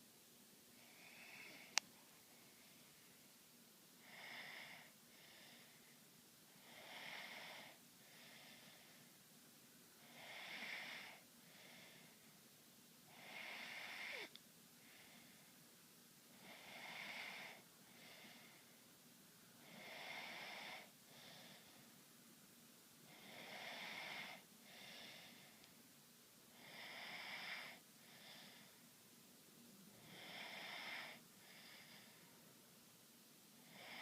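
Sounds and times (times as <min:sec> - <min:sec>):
person snoring: 0:13.1 - 0:14.3, 0:30.0 - 0:32.0.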